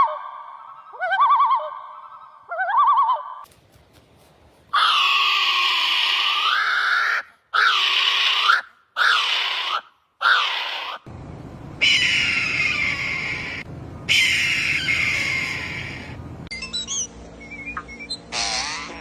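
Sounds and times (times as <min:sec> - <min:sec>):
harsh bird calls: 0:11.8 - 0:19.0.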